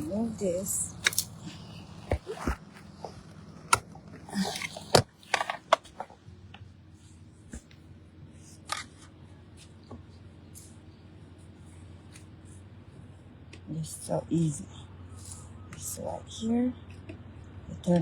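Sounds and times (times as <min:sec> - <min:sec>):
handling noise: 0:00.0 - 0:06.3
low steady hum: 0:00.0 - 0:18.0
plastic parts clicking and snapping: 0:01.0 - 0:06.1.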